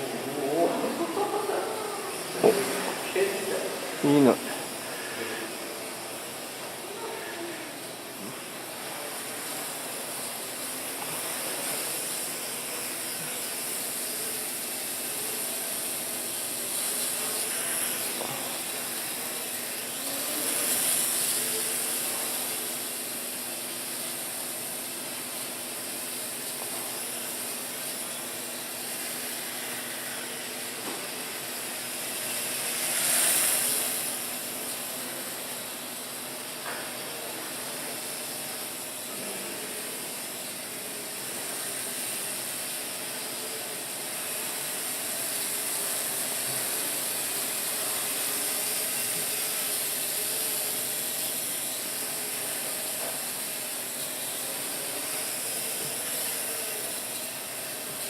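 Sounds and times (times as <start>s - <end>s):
quadcopter propellers whirring: 0.0s - 22.9s.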